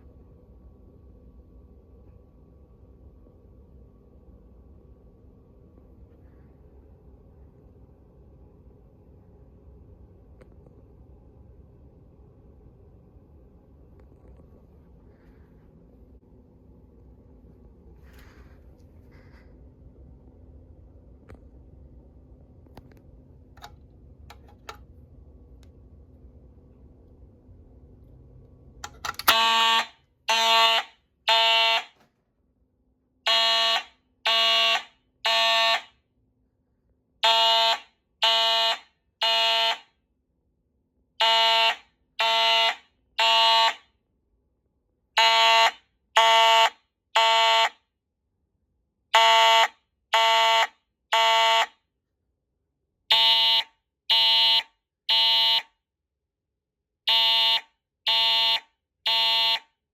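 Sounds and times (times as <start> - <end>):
fire alarm horn blasts: 29.1 - 32.0, 33.2 - 36.0, 37.2 - 40.0, 41.2 - 43.9, 45.2 - 47.8, 49.1 - 51.8, 53.1 - 55.8, 57.1 - 59.8
lower alarm tone: 29.2 - 32.0, 33.3 - 35.9, 37.2 - 39.8, 41.2 - 43.8, 45.2 - 47.7, 49.2 - 51.7, 53.1 - 55.7, 57.1 - 59.6.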